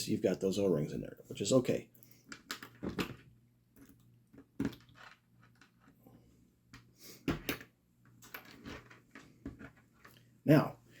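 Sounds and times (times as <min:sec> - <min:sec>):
handling small parts and tools: 0:02.0 - 0:10.3.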